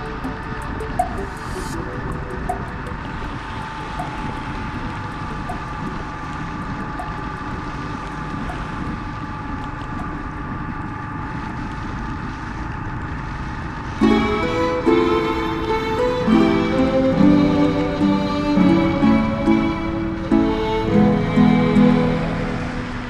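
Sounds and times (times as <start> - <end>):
music: 0.0 - 6.3, 14.0 - 23.0
wind noise on microphone: 0.0 - 20.9.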